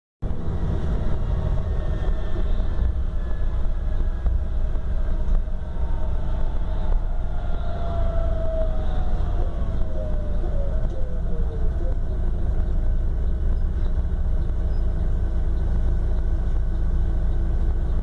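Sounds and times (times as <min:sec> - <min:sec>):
diesel engine rumble: 0:00.2 - 0:18.0.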